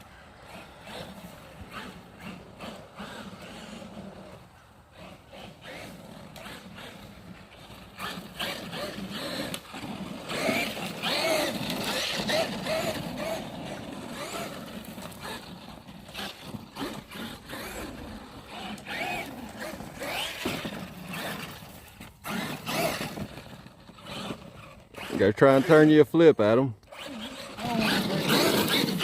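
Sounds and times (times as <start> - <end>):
electric motor whining: 0.0 - 26.0, 26.8 - 29.0.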